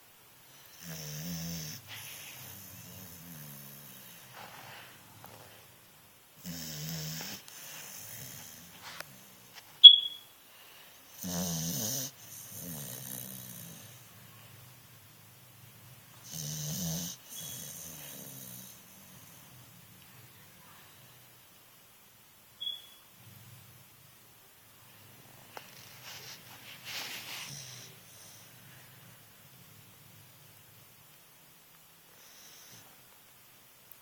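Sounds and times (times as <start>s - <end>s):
snoring: 0.6s - 4.3s, 6.4s - 8.7s, 11.2s - 14.0s, 16.2s - 19.4s
short high squeak: 9.8s - 10.3s, 22.6s - 23.0s.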